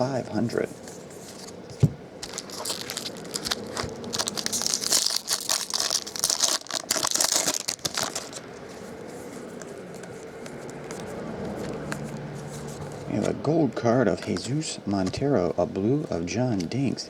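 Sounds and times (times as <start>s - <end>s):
foil wrapper tearing and crinkling: 2.2s - 8.5s.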